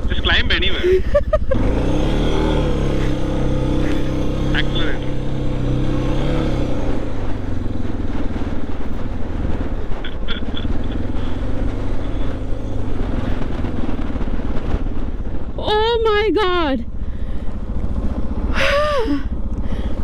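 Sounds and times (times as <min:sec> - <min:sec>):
motorcycle engine labouring: 0:00.0 - 0:20.0.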